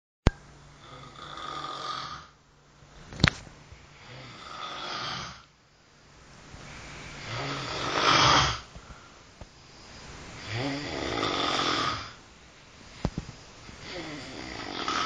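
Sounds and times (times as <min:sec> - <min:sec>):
person snoring: 0:00.8 - 0:02.4, 0:04.0 - 0:05.5, 0:07.2 - 0:08.7, 0:10.4 - 0:12.2, 0:13.8 - 0:15.0.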